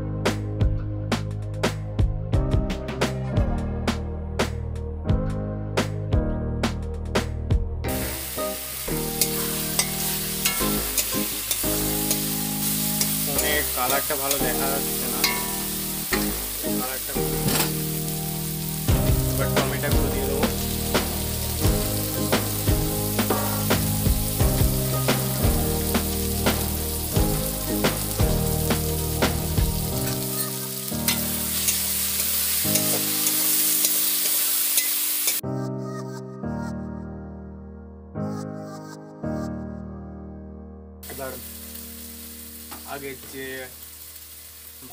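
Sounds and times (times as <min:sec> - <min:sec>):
background music: 0:00.0 - 0:44.4
onions sizzling in hot oil: 0:07.9 - 0:35.4, 0:41.0 - 0:44.9
spatula scraping a pan: 0:09.2 - 0:12.4.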